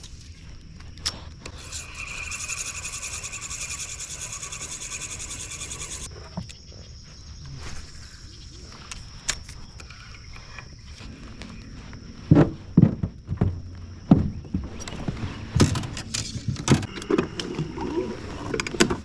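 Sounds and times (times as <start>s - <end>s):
high insect trill: 0.0s - 19.0s
fast-pulsing insect buzz: 1.5s - 6.1s.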